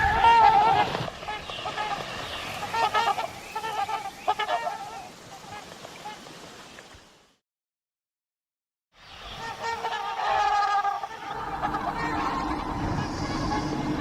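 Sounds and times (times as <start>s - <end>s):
seabird honking squawks: 0.0s - 2.0s, 2.6s - 5.1s, 9.4s - 14.0s.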